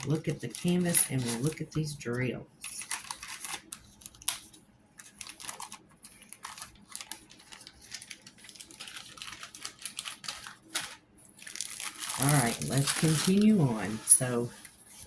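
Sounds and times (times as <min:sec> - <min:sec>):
plastic packaging crinkling: 0:00.0 - 0:01.8, 0:02.6 - 0:15.0.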